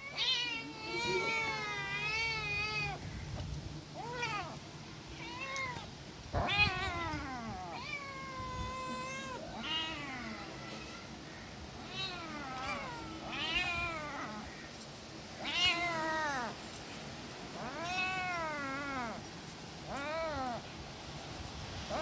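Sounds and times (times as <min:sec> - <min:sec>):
kittens meowing: 0:00.0 - 0:03.1, 0:05.2 - 0:11.2, 0:11.8 - 0:14.7, 0:15.4 - 0:16.6, 0:17.6 - 0:19.2.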